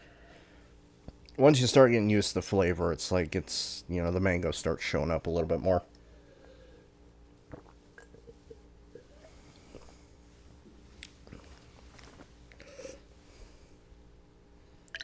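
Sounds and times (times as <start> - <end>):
low room hum: 0.0 - 15.0
faint mouth noises: 7.5 - 10.0.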